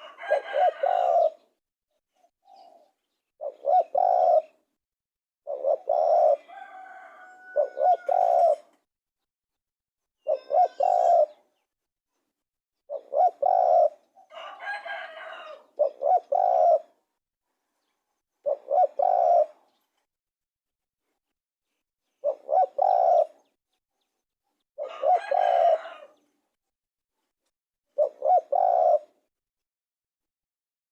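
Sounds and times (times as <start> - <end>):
dove cooing: 0.0 - 1.5, 2.4 - 4.7, 5.4 - 8.8, 10.2 - 11.5, 12.9 - 17.0, 18.4 - 19.7, 22.2 - 23.5, 24.8 - 26.2, 28.0 - 29.3.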